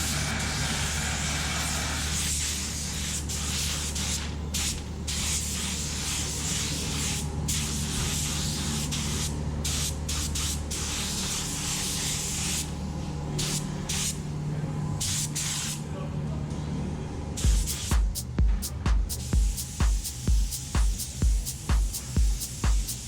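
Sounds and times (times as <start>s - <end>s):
paint spray gun hissing: 0.0s - 12.8s, 17.6s - 23.0s
low hum: 16.7s - 23.0s.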